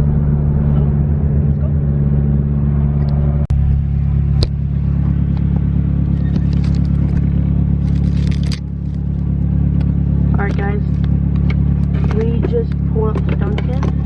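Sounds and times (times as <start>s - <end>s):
car engine and road noise: 0.0s - 14.0s.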